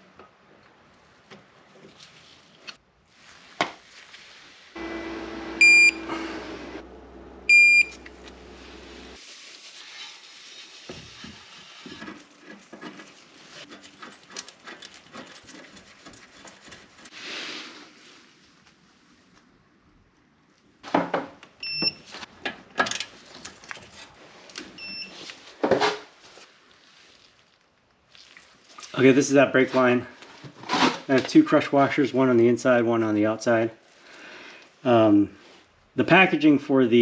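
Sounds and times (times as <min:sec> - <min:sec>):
short electronic beeps: 0:05.6 - 0:06.1, 0:07.5 - 0:08.0.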